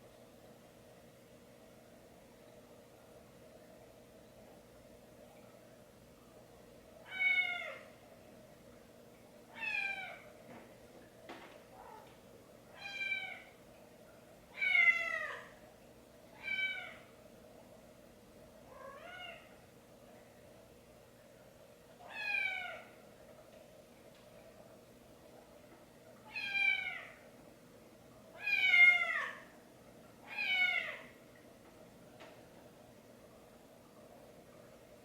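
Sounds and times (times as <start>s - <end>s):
cat meowing: 16.4s - 17.0s, 30.3s - 31.0s.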